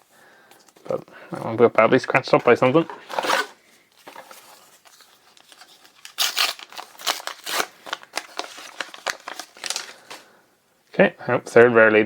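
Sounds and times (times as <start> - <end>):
foil wrapper crinkling and tearing: 3.1 - 10.3.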